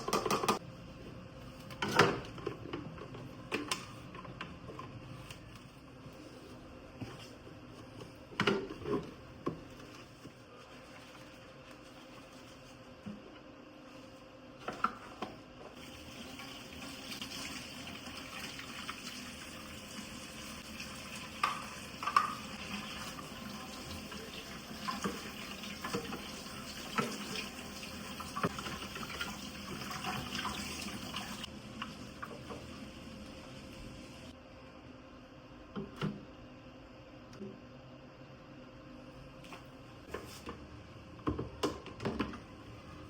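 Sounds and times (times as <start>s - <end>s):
tap water running into sink: 15.8s - 31.5s.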